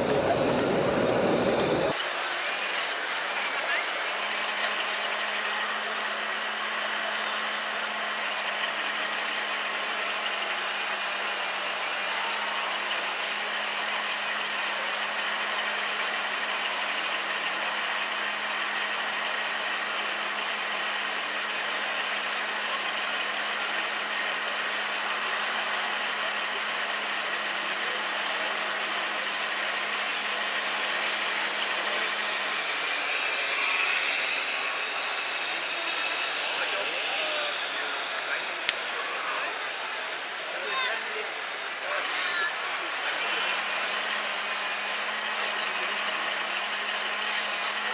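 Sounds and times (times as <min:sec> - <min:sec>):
constant low hum: 0:00.0 - 0:02.0
toy truck engine idle: 0:00.0 - 0:02.0, 0:07.8 - 0:34.6, 0:42.0 - 0:47.9.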